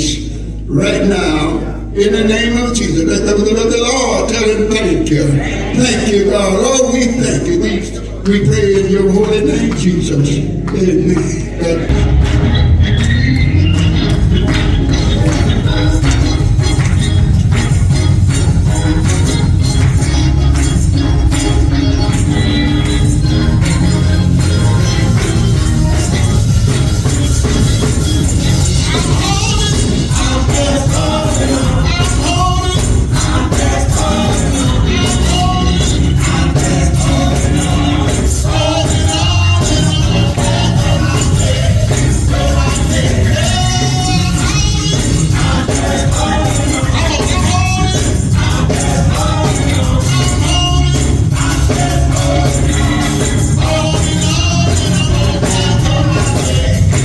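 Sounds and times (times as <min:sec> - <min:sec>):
gospel music with singing: 0:00.0 - 0:57.0
heavy bass: 0:11.8 - 0:57.0
jingling percussion beat: 0:11.9 - 0:57.0
tambourine: 0:11.9 - 0:57.0.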